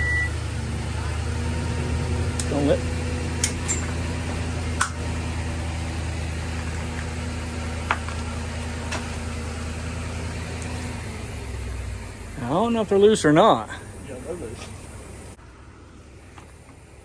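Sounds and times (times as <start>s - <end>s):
vehicle engine idling: 0.0s - 17.0s
sharp clicks and knocks: 3.4s - 5.0s.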